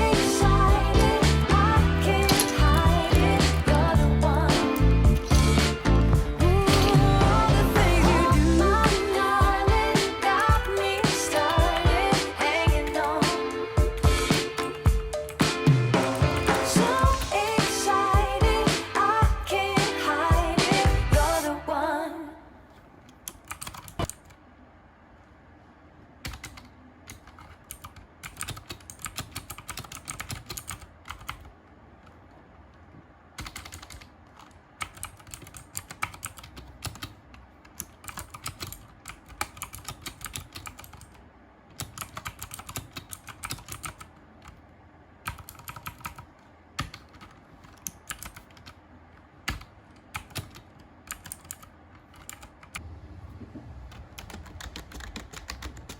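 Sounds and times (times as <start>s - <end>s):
mechanical keyboard typing: 0.1s - 5.7s, 9.0s - 17.7s, 23.1s - 24.4s, 26.2s - 31.5s, 33.4s - 44.6s, 45.2s - 48.8s, 49.4s - 52.8s, 53.9s - 55.9s.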